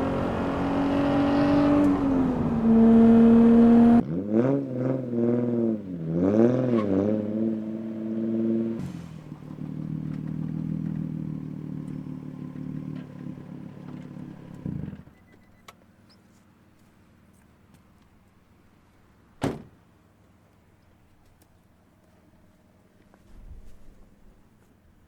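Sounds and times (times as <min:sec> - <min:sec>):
car engine revving and idling: 0:00.0 - 0:15.0.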